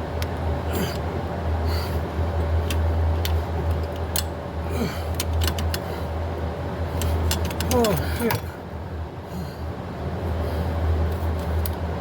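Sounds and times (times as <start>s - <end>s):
steady low hum: 0.0s - 12.0s
clicks of tools and metal parts: 2.6s - 4.3s, 5.1s - 5.9s, 7.0s - 8.4s.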